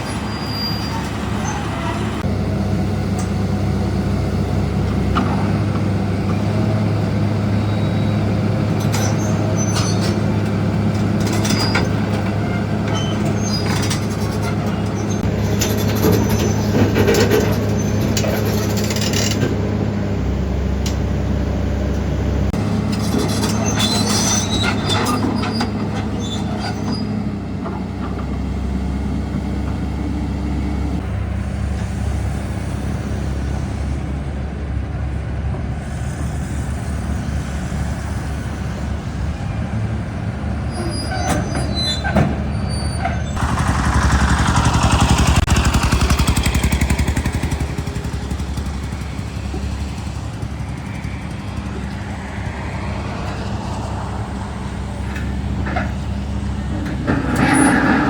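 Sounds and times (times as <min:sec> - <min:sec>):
metallic clanks and squeaks: 0:00.0 - 0:02.3, 0:07.6 - 0:19.6, 0:22.9 - 0:28.4, 0:40.7 - 0:45.3, 0:54.9 - 0:58.0
heavy diesel engine running: 0:00.0 - 0:58.0.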